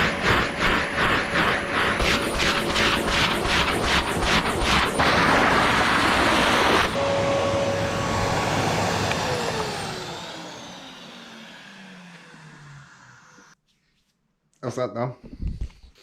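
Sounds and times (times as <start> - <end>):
motor winding down: 7.6 - 13.6.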